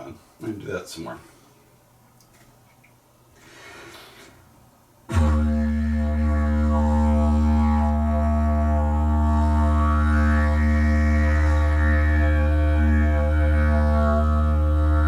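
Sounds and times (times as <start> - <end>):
didgeridoo drone: 5.1 - 15.0.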